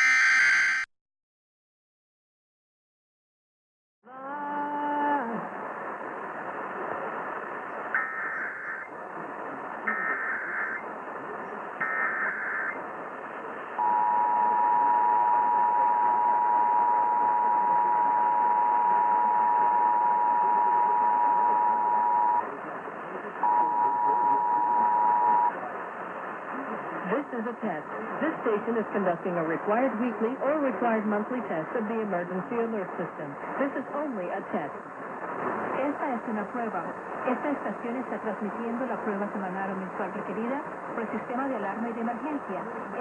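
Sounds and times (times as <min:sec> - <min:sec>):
digital header bursts: 0:00.0 - 0:00.8, 0:09.8 - 0:10.8, 0:11.8 - 0:12.8
radio hiss: 0:00.0 - 0:00.8, 0:04.7 - 0:43.0
two-tone attention signal: 0:13.8 - 0:22.4, 0:23.4 - 0:25.5.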